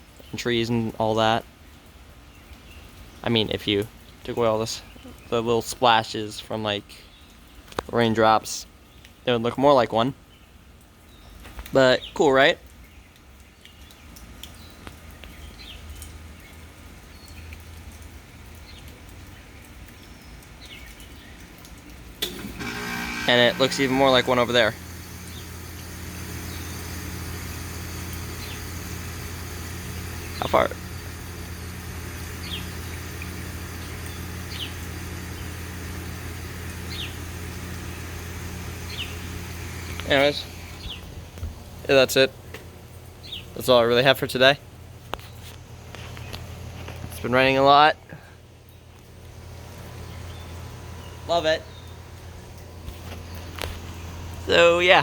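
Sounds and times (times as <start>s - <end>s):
light rain falling: 0.0s - 23.1s, 24.2s - 55.0s
raindrops ticking and splashing: 0.0s - 47.6s, 48.3s - 55.0s
steady low hum: 21.9s - 55.0s
bird chirping: 24.9s - 37.5s, 38.7s - 41.1s, 49.9s - 52.2s.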